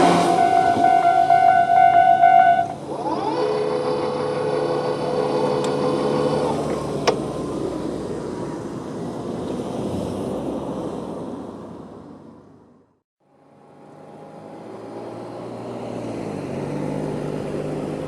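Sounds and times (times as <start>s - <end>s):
held tone: 0.0s - 6.4s.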